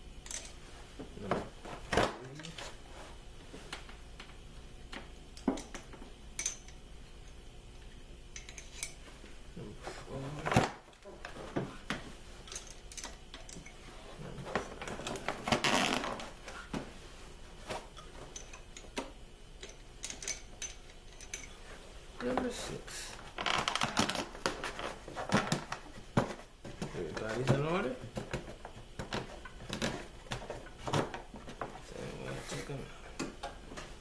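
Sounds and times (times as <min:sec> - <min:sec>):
metal rods clinking: 0:00.2 - 0:00.6, 0:05.5 - 0:07.4, 0:08.3 - 0:09.0, 0:12.5 - 0:13.8, 0:19.6 - 0:21.5.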